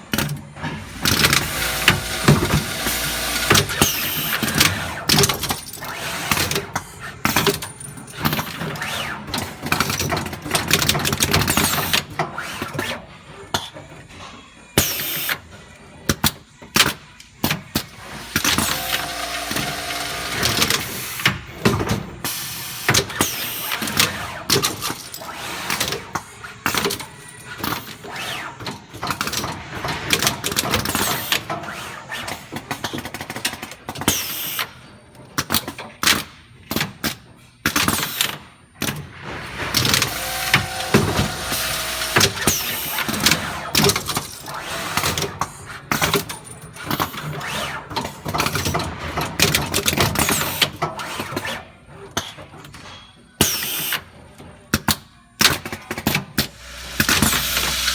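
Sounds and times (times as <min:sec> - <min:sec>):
machine mechanism clicking and clunking: 0:00.0 - 0:12.4, 0:16.1 - 0:34.4, 0:35.1 - 0:51.4, 0:52.2 - 0:57.9
motor running: 0:00.6 - 0:04.7, 0:17.9 - 0:21.2, 0:39.3 - 0:43.8, 0:56.5 - 0:57.9.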